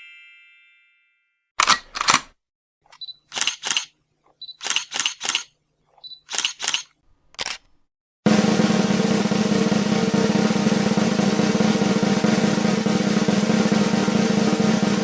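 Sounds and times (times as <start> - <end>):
sharp clicks: 2.9 - 3.9, 4.5 - 5.5, 6.2 - 7.8
snare drum roll: 8.3 - 15.0.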